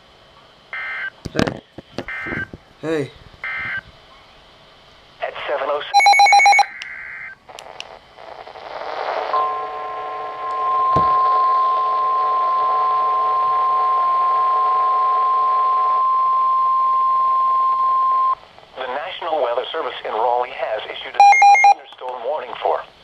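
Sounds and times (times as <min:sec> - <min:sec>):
digital header tones: 0:06.0 - 0:06.7, 0:21.2 - 0:21.8
steady warning alarm tone: 0:06.0 - 0:07.3, 0:09.4 - 0:18.4, 0:21.2 - 0:21.8
static hiss: 0:07.0 - 0:09.4.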